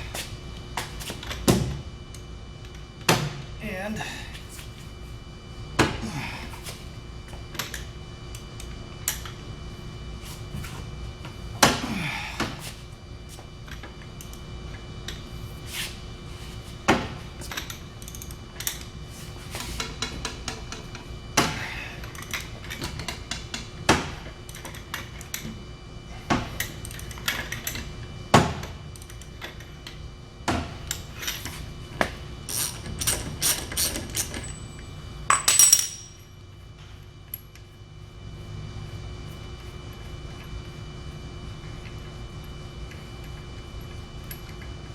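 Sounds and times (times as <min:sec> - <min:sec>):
metallic clanks: 0:35.3 - 0:36.2
metal clang with ringing: 0:35.3 - 0:36.3.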